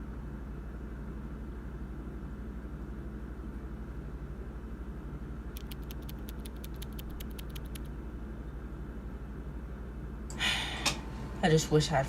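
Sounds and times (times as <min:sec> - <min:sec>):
rapid light clicks: 0:05.6 - 0:08.0.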